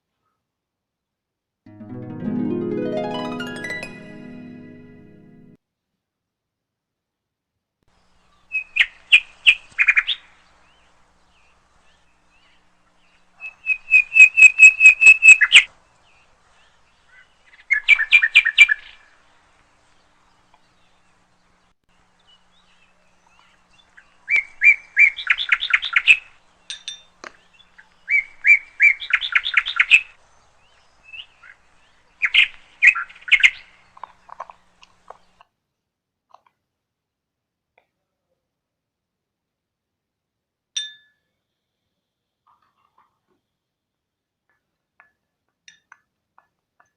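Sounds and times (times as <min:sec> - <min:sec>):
songbird chirping: 0:01.7 - 0:05.6, 0:08.0 - 0:35.4.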